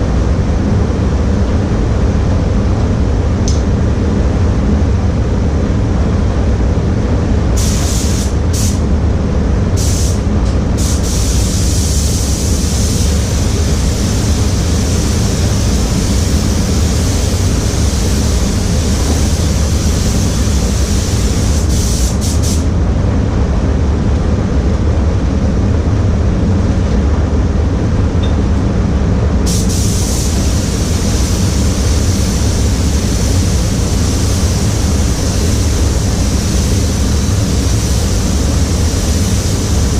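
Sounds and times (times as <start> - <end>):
spray gun air hiss: 7.6 - 8.9, 9.8 - 22.7, 29.4 - 39.9.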